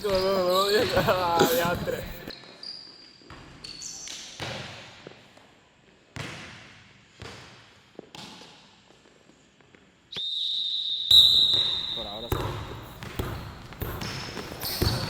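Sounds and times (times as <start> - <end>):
basketball bouncing on court: 6.2 - 8.5, 11.1 - 15.0.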